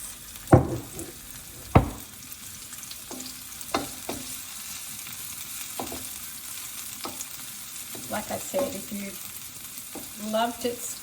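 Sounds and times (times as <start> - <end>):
food sizzling in hot oil: 0.0 - 11.0
utensil knocking against wok: 0.6 - 2.1, 3.1 - 4.3.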